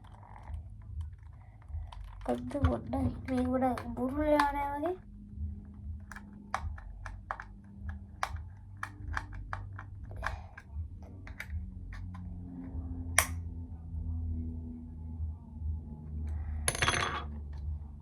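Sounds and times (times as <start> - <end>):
small clicks and taps from handling: 6.0 - 12.3.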